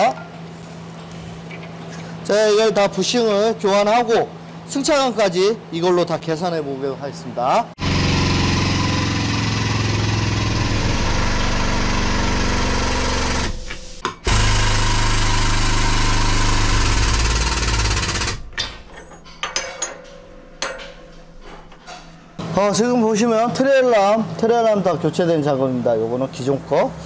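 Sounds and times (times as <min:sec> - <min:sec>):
power tool hammering rapidly: 0:07.8 - 0:18.6.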